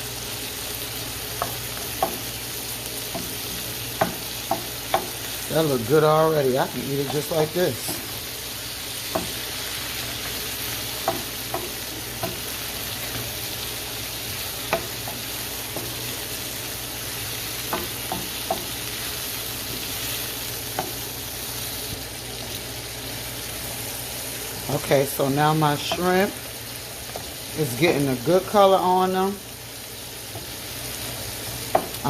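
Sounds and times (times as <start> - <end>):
food sizzling in a pot: 0.0 - 32.0.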